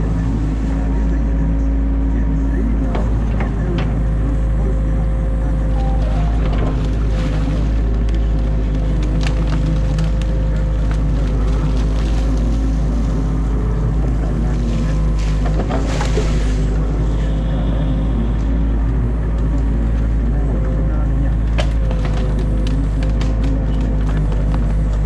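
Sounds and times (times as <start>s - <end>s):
excavator diesel engine running: 0.0s - 25.0s
branches cracking and snapping: 6.0s - 16.9s, 21.4s - 25.0s.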